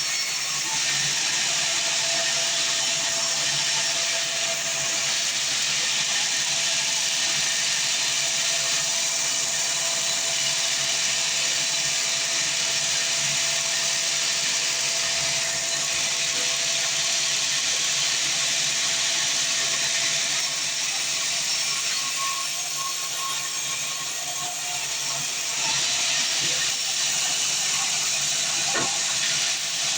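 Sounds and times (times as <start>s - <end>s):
sawmill saw cutting log: 0.0s - 29.9s.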